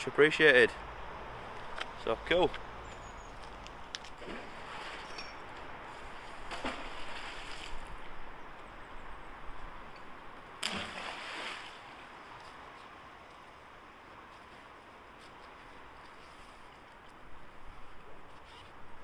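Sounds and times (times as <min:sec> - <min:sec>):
steady outdoor hiss: 0:00.0 - 0:19.0
magnet splashing into water: 0:06.4 - 0:07.9, 0:10.6 - 0:11.8.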